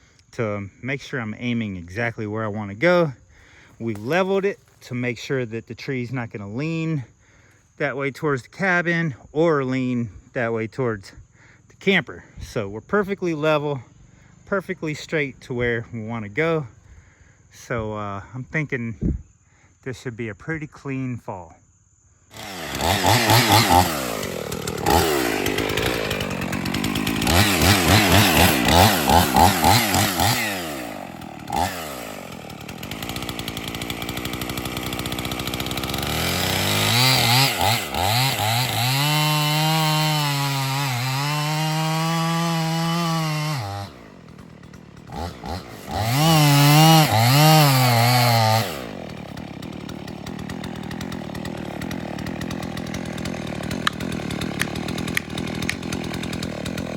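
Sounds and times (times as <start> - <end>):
chainsaw cutting wood: 2.8 - 5.0, 22.3 - 56.9.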